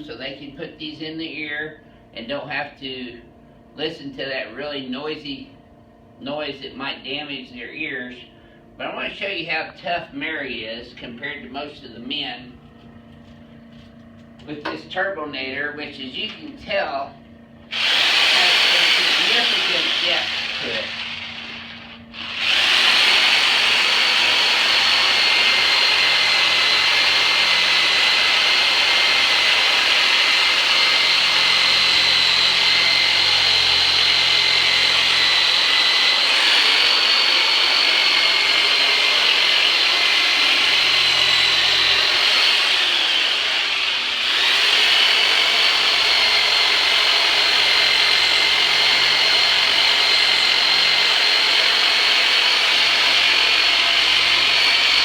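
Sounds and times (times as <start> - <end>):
massage tool motor whine: 17.6 - 55.0.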